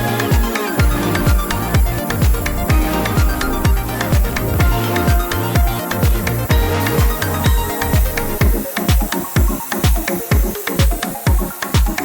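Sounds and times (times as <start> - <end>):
electronic dance music: 0.0 - 12.0
kick drum: 0.0 - 12.0
ticking hi-hats: 0.0 - 12.0.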